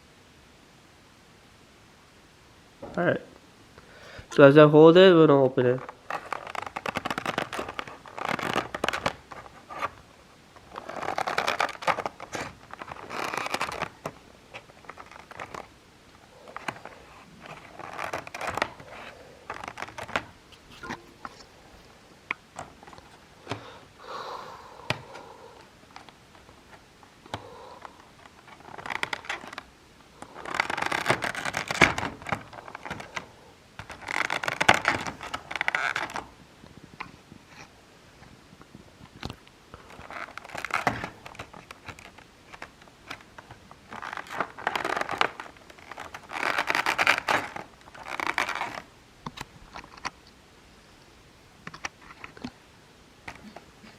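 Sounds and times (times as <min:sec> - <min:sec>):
cardboard scraping and rustling: 0:05.7 - 0:23.7, 0:25.9 - 0:36.4, 0:39.9 - 0:48.9.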